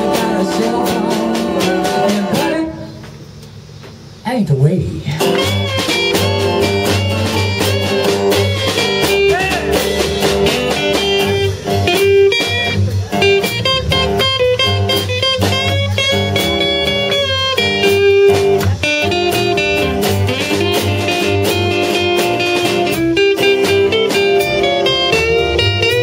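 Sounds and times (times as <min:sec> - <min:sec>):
blues band playing: 0:00.0 - 0:04.0, 0:05.1 - 0:26.0
lead guitar solo: 0:05.2 - 0:26.0.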